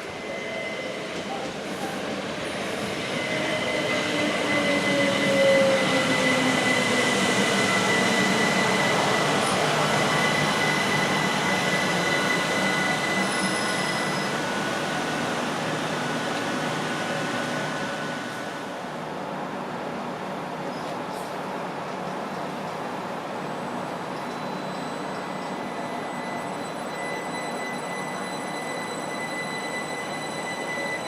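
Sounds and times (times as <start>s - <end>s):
train rumbling on rails: 0.0s - 31.0s
high-pitched wheel squeal: 3.2s - 14.4s, 24.2s - 31.0s.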